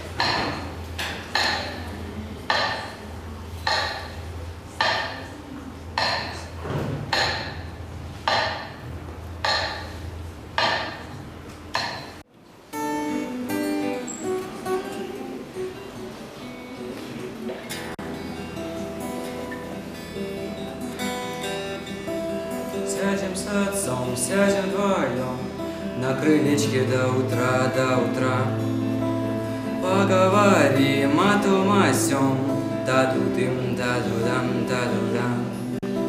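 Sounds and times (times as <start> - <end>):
plucked acoustic guitar: 0.0 - 36.0.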